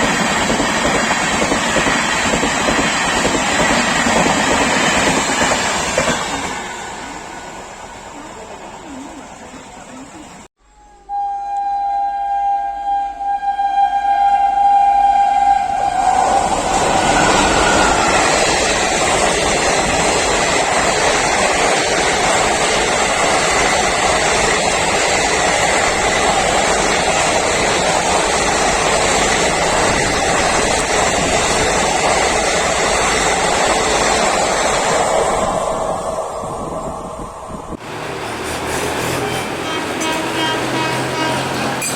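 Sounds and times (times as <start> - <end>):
train rushing past: 0.0 - 10.5, 14.5 - 41.9
train horn: 11.0 - 16.5, 38.9 - 41.9.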